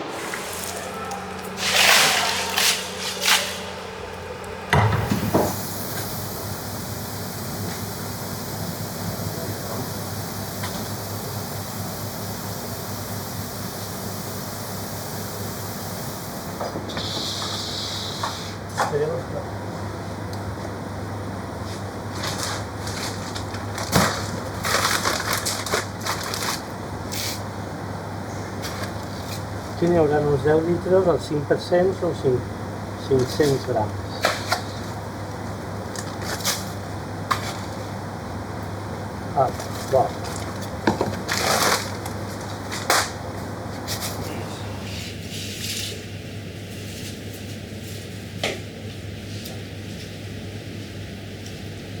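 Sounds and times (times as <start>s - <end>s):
running water filling container: 0.0s - 3.6s
steady low hum: 0.0s - 25.0s
loud knock: 4.7s - 5.6s.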